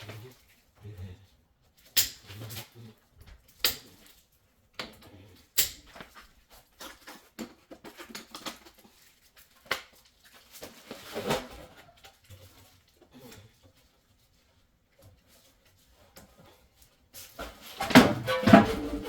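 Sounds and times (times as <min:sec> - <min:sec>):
scraping rustle: 0:06.0 - 0:19.0.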